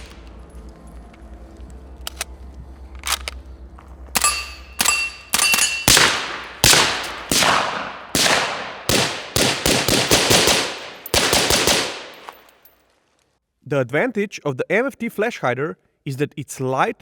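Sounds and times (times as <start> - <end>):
suppressed rifle shots echoing: 4.2 - 12.5.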